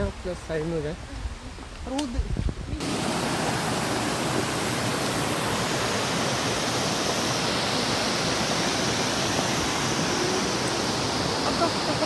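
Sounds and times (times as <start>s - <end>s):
waterfall rushing: 2.8s - 12.0s.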